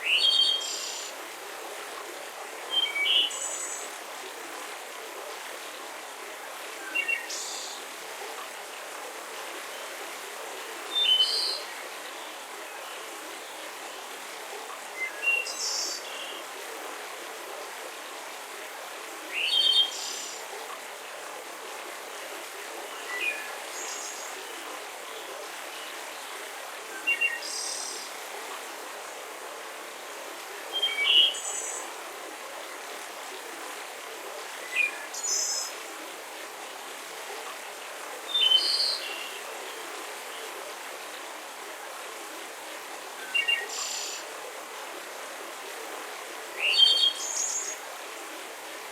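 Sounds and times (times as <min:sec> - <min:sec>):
steady background hiss: 0:00.0 - 0:48.9.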